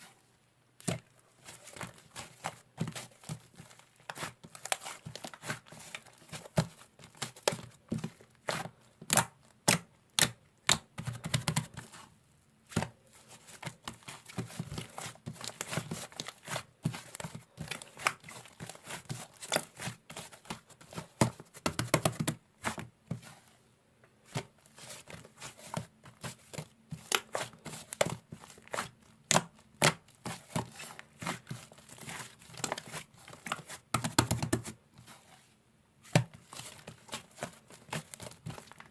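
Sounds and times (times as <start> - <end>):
crinkling and tearing: 0.8 - 8.7, 36.4 - 38.9.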